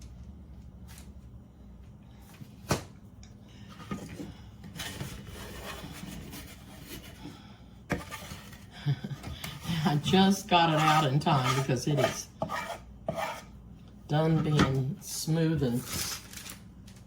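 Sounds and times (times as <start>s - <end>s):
spoon scraping candy in bowl: 10.0s - 13.5s.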